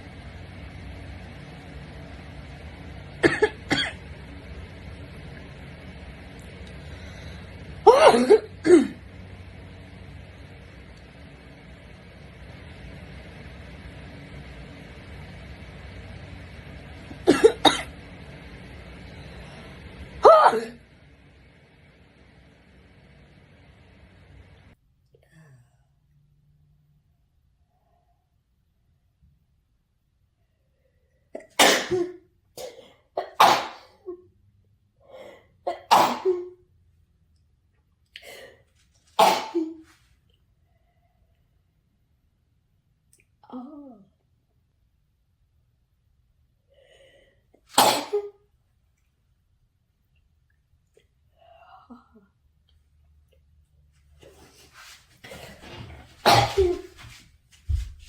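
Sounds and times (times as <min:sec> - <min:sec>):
person sneezing bursts: 0:07.9 - 0:09.0, 0:20.2 - 0:20.8, 0:31.4 - 0:34.0, 0:35.7 - 0:36.5, 0:39.2 - 0:39.9, 0:47.7 - 0:48.4, 0:56.2 - 0:57.0.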